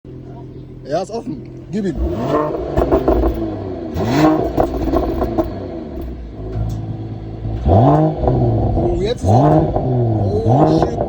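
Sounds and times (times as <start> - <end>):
car engine revving and idling: 0.1 - 11.0.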